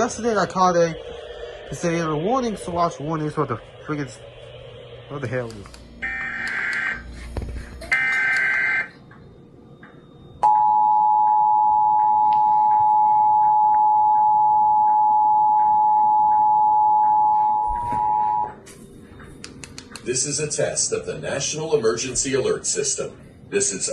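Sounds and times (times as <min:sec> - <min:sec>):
screechy data-tone burst: 0:00.0 - 0:07.2, 0:07.9 - 0:09.0
two-tone attention signal: 0:10.4 - 0:18.6.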